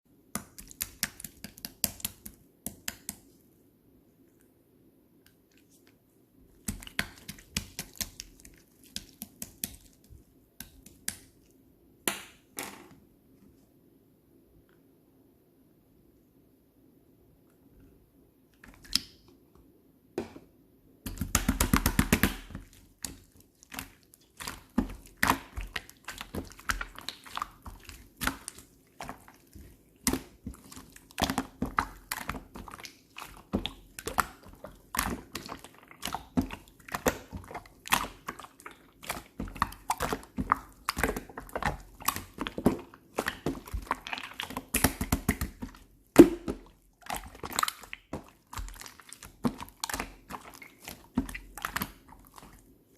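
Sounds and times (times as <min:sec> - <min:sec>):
slime squished by hand: 0:21.1 - 0:52.7.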